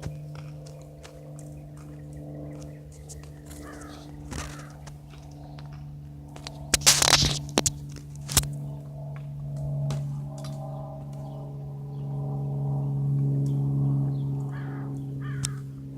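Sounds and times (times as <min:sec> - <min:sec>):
propeller plane engine droning: 0:00.0 - 0:15.9
harsh scraping noises: 0:06.4 - 0:08.5.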